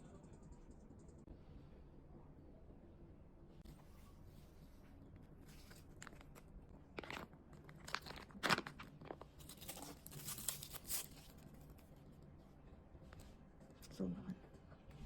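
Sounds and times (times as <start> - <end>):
crunchy chewing of fruit: 7.0 - 11.7.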